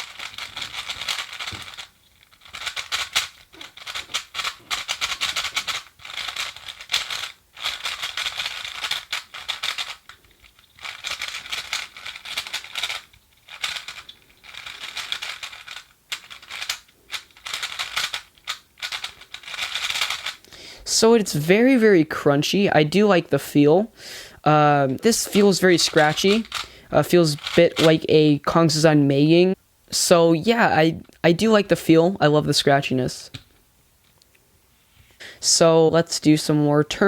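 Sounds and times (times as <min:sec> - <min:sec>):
speed cube clicking and rattling: 0:00.0 - 0:20.4, 0:25.1 - 0:28.1.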